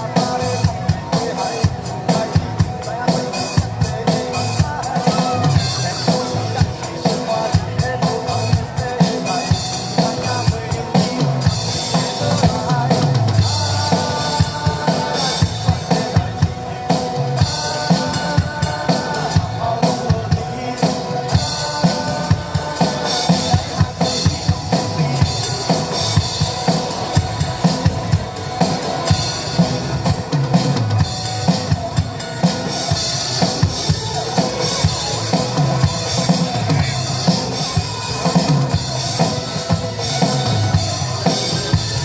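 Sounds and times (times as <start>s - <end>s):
band music with drum kit: 0.0s - 42.0s.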